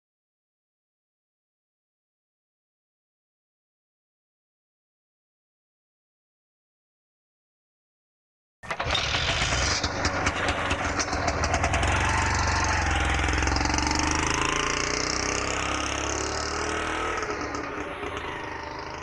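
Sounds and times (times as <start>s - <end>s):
auto rickshaw engine clattering: 8.6s - 19.0s.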